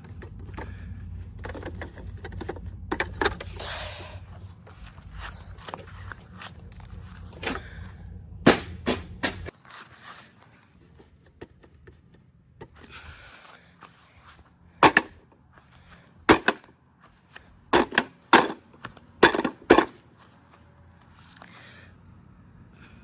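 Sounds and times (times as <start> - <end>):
toy being smashed with cracking knocks: 8.4 - 9.5, 14.8 - 15.2, 16.3 - 16.7, 17.8 - 20.0.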